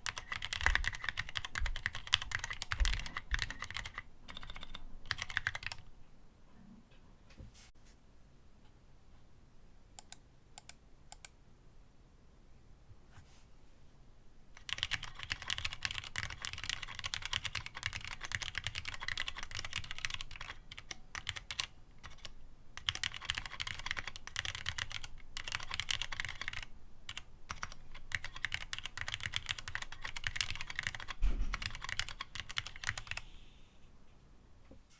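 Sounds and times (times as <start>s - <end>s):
heavy keyboard thud: 31.2s - 31.7s.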